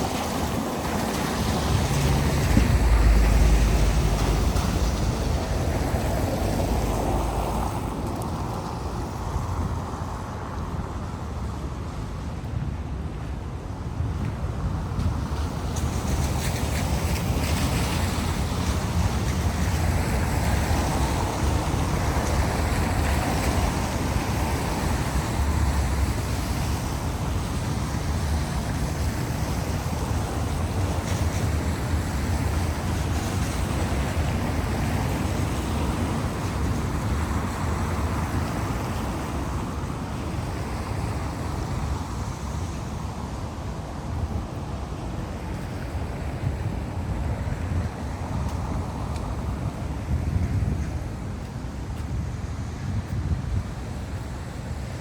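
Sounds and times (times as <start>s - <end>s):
wind buffeting microphone: 0.0s - 55.0s.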